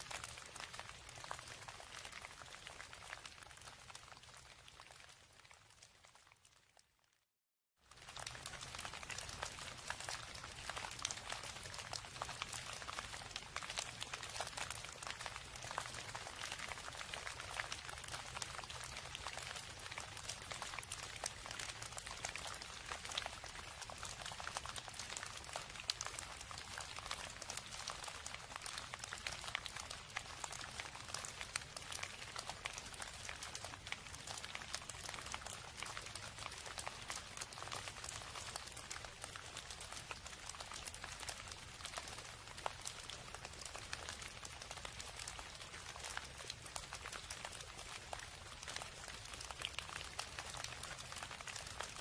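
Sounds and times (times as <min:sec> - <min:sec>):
steady rain: 0:07.9 - 0:52.0.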